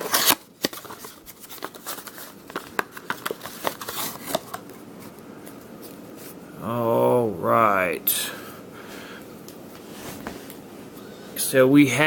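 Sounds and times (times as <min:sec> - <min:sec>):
cardboard box and cards handled: 0:00.0 - 0:05.1.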